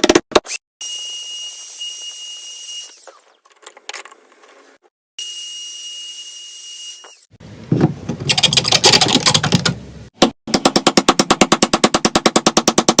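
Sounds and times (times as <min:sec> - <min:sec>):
woodworking tool high whine: 0:00.8 - 0:03.4, 0:05.2 - 0:07.4
fast even clatter: 0:08.2 - 0:09.8.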